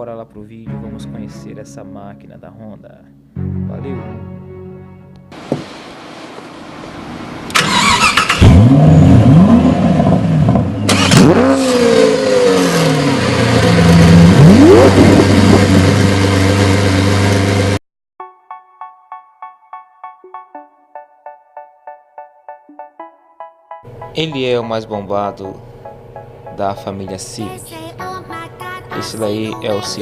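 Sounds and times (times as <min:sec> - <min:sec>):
car engine revving: 0:05.4 - 0:17.8.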